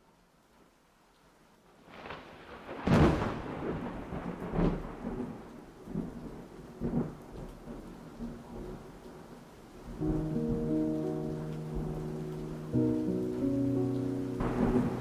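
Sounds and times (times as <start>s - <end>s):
rain: 0.0s - 15.0s
thunder rolling: 2.0s - 5.4s, 9.9s - 15.0s.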